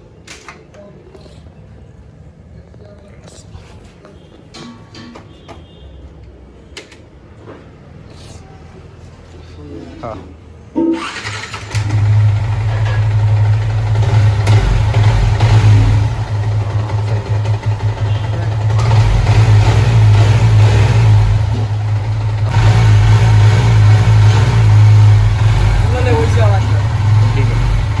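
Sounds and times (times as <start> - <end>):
motorcycle engine starting and revving: 11.0 - 28.0.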